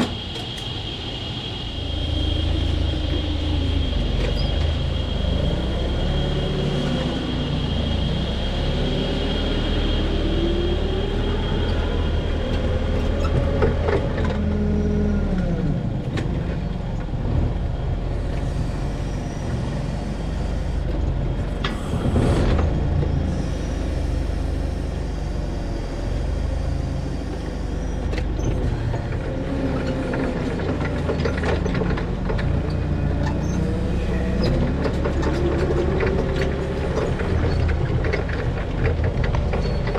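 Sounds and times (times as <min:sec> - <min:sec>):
large machine engine revving: 0:17.2 - 0:39.9.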